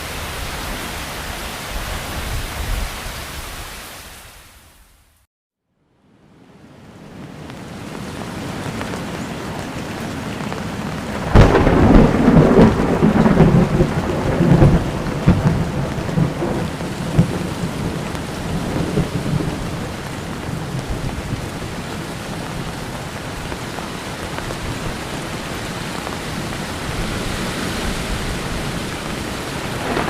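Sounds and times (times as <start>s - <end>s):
heavy rain: 0.0s - 4.6s, 6.3s - 30.0s
thunderclap rumbling: 11.0s - 21.6s, 26.4s - 30.0s.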